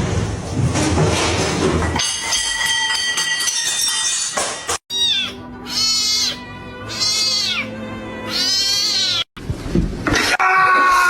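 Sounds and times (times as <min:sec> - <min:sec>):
background music: 0:04.6 - 0:09.2
cat meowing: 0:04.9 - 0:09.3.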